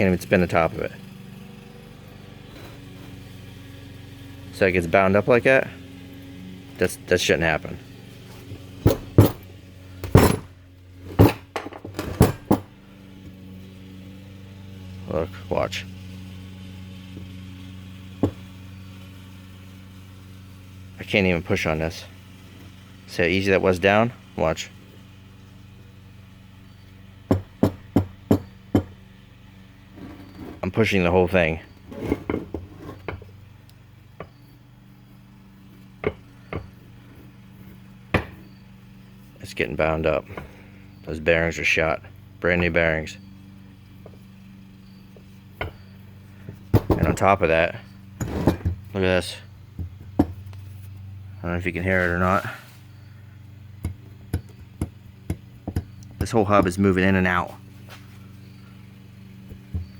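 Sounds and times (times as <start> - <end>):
steady low hum: 0.0 - 59.9
metal clunks of wheel hub: 8.3 - 12.7, 31.7 - 33.4, 36.0 - 36.8, 45.5 - 48.9.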